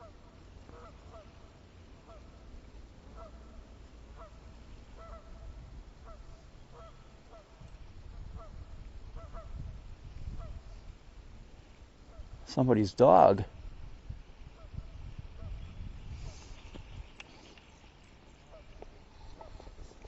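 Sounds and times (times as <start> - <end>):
distant animal calling: 0.0 - 2.4, 3.1 - 7.6, 8.4 - 9.6, 18.3 - 19.8
wind rumble on microphone: 3.2 - 12.5, 13.4 - 17.2.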